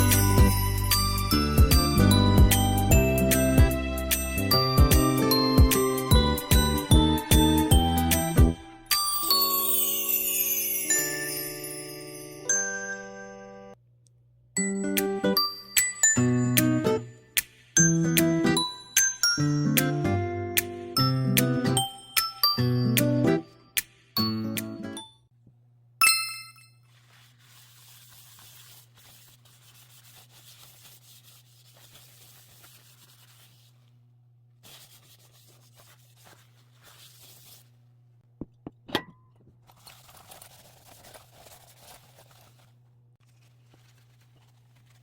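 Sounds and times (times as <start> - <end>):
metallic ding: 26.0 - 26.8
cookware rubbing and rustling: 26.9 - 33.9, 34.6 - 37.8.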